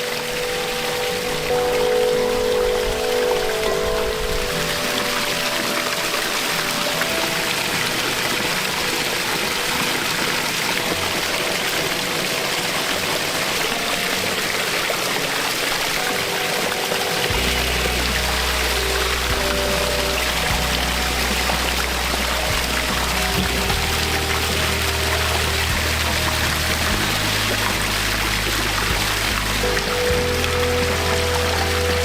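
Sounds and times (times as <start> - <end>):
soft background music: 0.0 - 32.0
waterfall rushing and splashing: 0.0 - 32.0.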